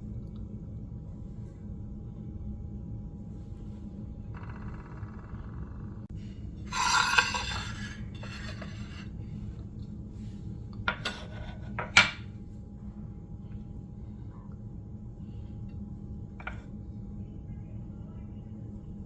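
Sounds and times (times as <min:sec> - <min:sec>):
steady low hum: 0:00.0 - 0:19.0
metal spoon scraping in bowl: 0:06.7 - 0:09.1.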